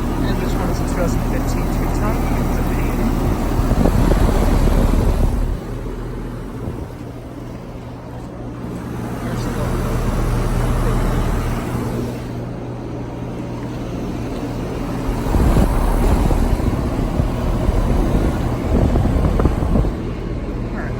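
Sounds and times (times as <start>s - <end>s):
air conditioner compressor hum: 0.0s - 20.9s
condenser fans whooshing: 0.0s - 20.9s
wind on microphone: 1.2s - 5.8s, 6.4s - 7.2s, 14.9s - 20.9s.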